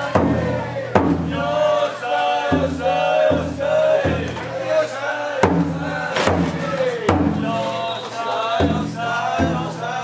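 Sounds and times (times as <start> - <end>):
taiko drum strokes: 0.0 - 1.8, 2.4 - 7.7
group of voices chanting: 0.0 - 10.0.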